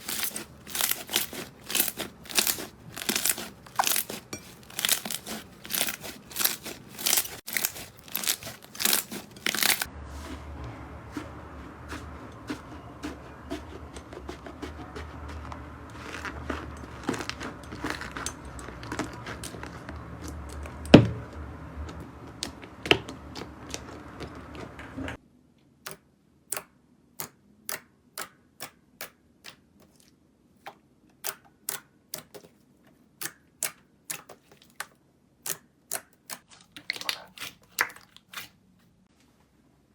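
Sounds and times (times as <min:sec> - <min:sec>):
slime squeezed and poked: 0:00.0 - 0:09.9
low hum: 0:09.9 - 0:17.0.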